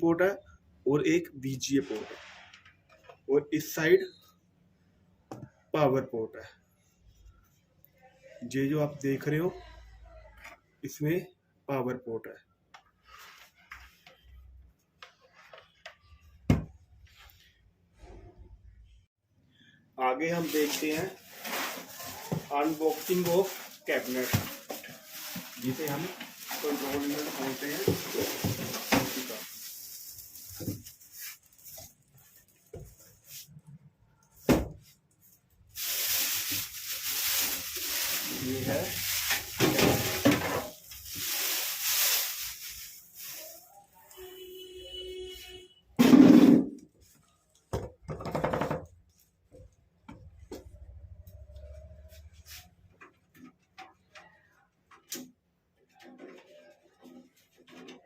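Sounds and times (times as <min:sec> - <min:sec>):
packaging rustling: 0:20.3 - 0:33.2, 0:35.7 - 0:43.8.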